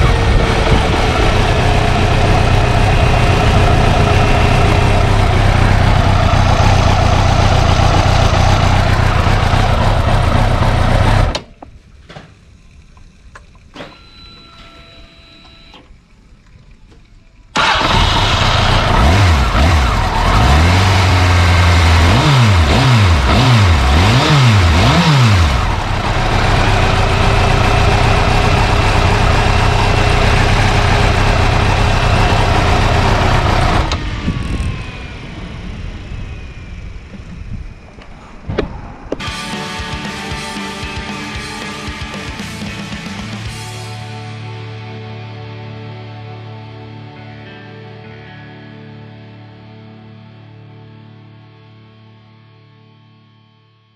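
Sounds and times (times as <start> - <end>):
motorcycle engine idling and revving: 0.0 - 13.7, 17.6 - 38.4.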